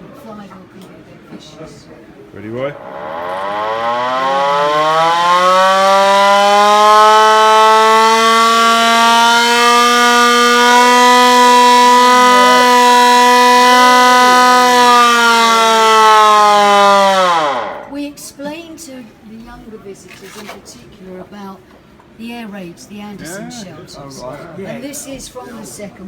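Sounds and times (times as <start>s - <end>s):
hand-cranked siren wailing: 2.7s - 18.0s.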